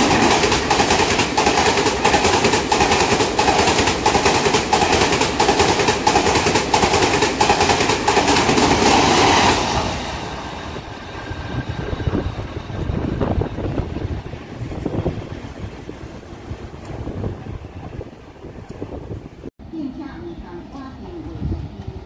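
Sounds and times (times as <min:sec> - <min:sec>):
train wheels clattering: 0:00.0 - 0:09.6
train rumble: 0:00.0 - 0:22.0
wind: 0:00.0 - 0:22.0.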